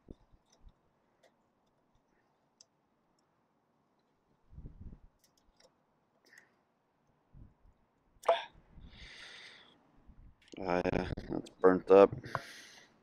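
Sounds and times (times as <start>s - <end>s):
small plastic clicks: 5.2s - 6.5s.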